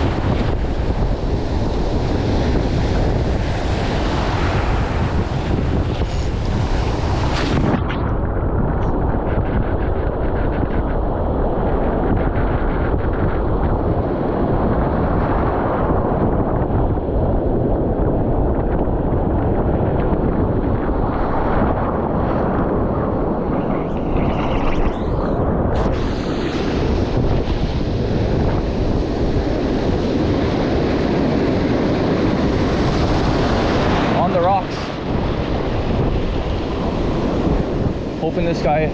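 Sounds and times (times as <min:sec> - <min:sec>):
wind buffeting microphone: 0:00.0 - 0:38.9
ocean surf breaking on rocks: 0:25.2 - 0:38.9.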